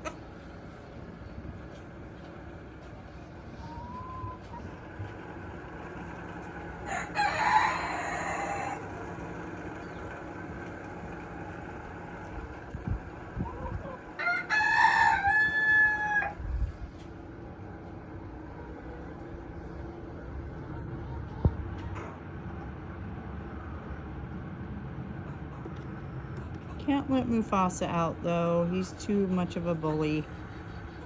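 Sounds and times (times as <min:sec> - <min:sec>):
rooster crowing: 0:06.8 - 0:09.0, 0:14.1 - 0:16.4.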